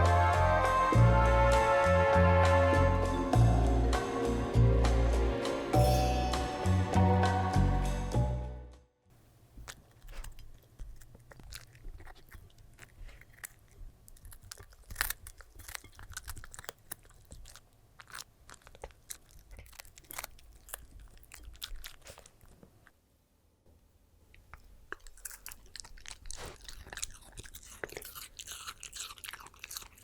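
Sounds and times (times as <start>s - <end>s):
dog crunching food: 9.5s - 23.0s, 24.3s - 30.0s.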